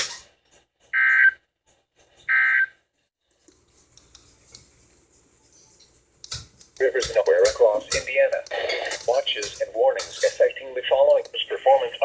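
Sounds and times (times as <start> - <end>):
faint radio hiss: 3.2 - 12.0.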